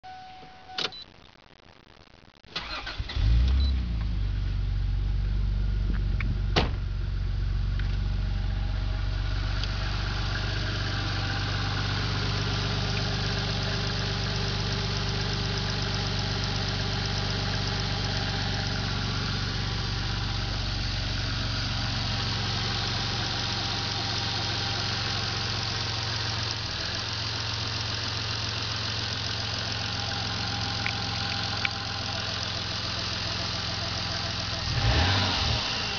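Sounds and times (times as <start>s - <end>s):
car engine starting and idling: 2.5s - 35.9s
pulsating engine chirp: 29.8s - 34.8s.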